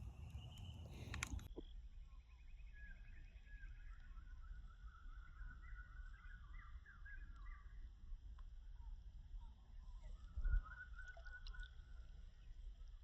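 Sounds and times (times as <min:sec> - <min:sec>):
bird chirping: 0:00.0 - 0:01.5
low rumble: 0:00.0 - 0:01.5.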